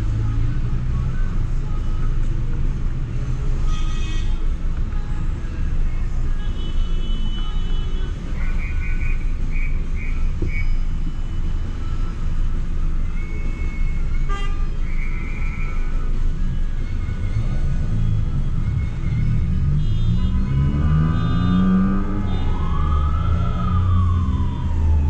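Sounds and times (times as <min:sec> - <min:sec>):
traffic rumble: 0:00.0 - 0:25.0
car horns honking: 0:14.2 - 0:15.0, 0:19.0 - 0:22.6.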